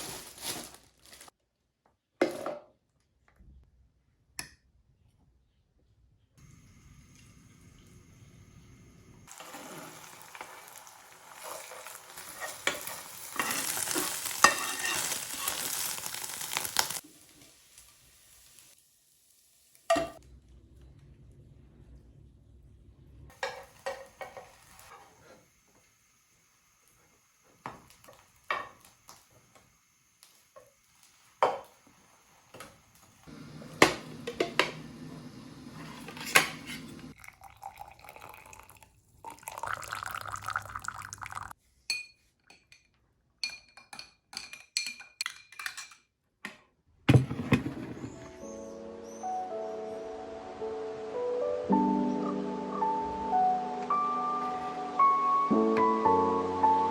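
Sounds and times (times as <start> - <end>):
pots and dishes clattering: 9.3 - 16.0, 19.9 - 20.2, 23.3 - 25.3, 33.3 - 37.1.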